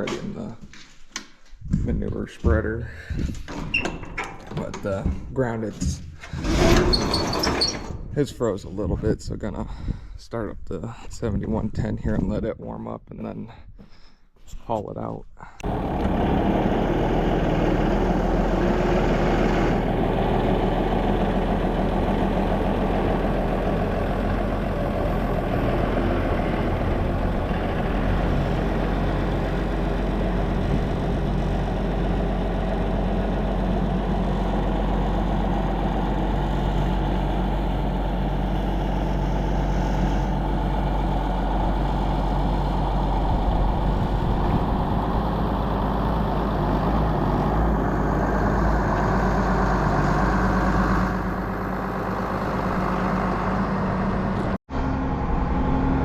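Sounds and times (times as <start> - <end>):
tractor diesel engine idling: 15.6 - 55.2.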